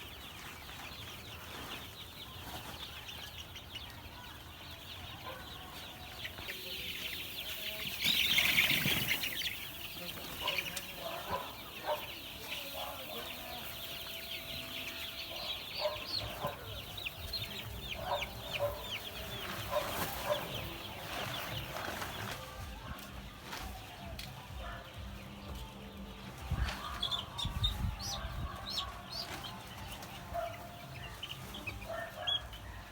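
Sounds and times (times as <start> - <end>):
chicks peeping: 0.0 - 32.9.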